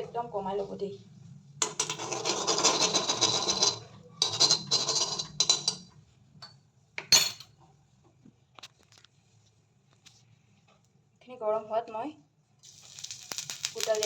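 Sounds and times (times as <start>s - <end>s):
metal utensils clattering in a pan: 1.6s - 5.8s.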